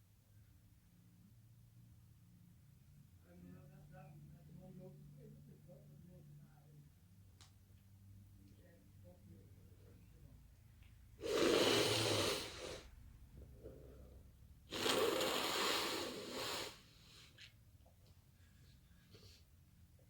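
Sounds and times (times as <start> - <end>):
person blowing nose: 11.2 - 12.9, 14.7 - 17.3
person sniffing: 11.2 - 13.0, 14.7 - 17.4.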